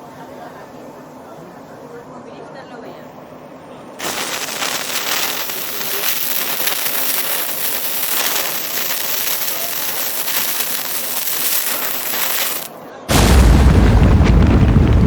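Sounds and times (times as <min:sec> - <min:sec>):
steady hissing rush: 0:04.0 - 0:15.0.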